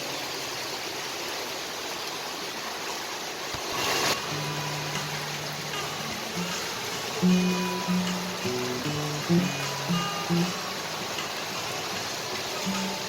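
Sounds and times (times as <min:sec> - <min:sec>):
heavy rain pouring: 0:00.0 - 0:13.0
soft held music notes: 0:04.2 - 0:13.0.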